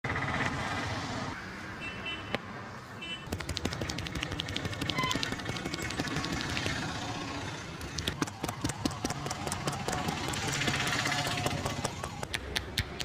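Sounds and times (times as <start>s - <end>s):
street background noise: 0.0s - 13.0s
hands tapping on head: 3.3s - 6.7s.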